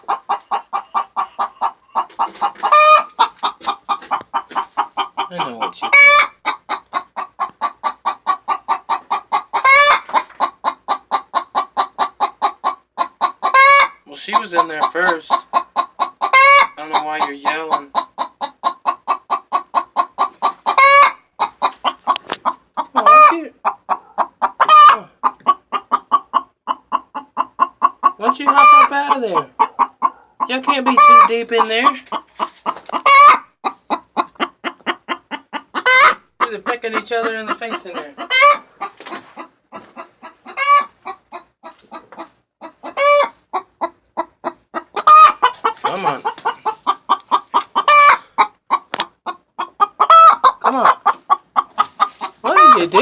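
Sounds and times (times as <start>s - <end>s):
hens clucking rapidly: 0.0s - 53.0s
hens squawking loudly: 0.0s - 53.0s
hen squawks: 45.0s - 48.3s.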